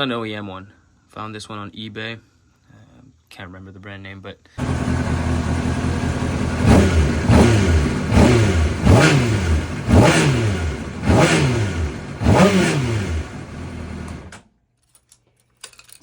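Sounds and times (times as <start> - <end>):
motorcycle engine idling and revving: 4.6 - 14.4.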